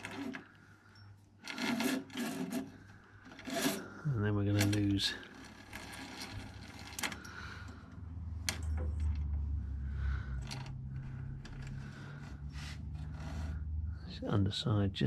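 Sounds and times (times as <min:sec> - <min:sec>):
hands clicking and scraping cable: 0:00.0 - 0:00.6, 0:01.4 - 0:09.4, 0:10.3 - 0:13.6
low steady hum: 0:00.0 - 0:15.0.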